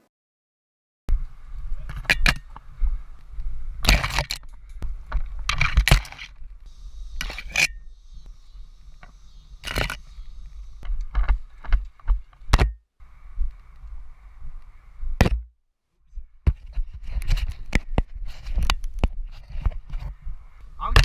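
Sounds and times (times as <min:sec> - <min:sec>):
rustling and scraping: 0:03.8 - 0:07.9, 0:08.8 - 0:12.6, 0:16.1 - 0:20.3.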